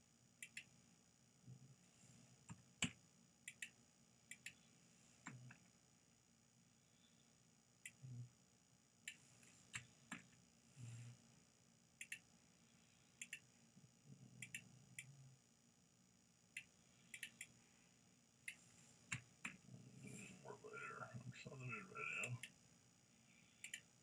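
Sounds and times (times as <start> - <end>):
computer mouse clicking: 0.4 - 0.7, 2.5 - 4.6, 12.0 - 12.2, 13.2 - 13.5, 14.4 - 15.1, 16.6 - 17.6, 18.5 - 19.6, 23.6 - 23.9.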